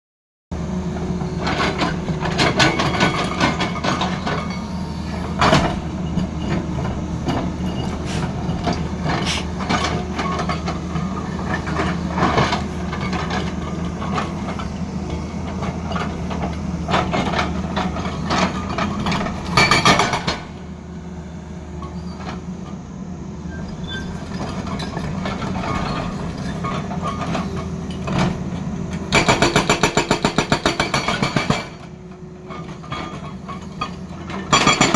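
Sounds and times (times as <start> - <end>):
excavator diesel engine running: 0.5 - 34.9
hydraulic rock breaker hammering: 29.0 - 31.9, 32.6 - 34.9.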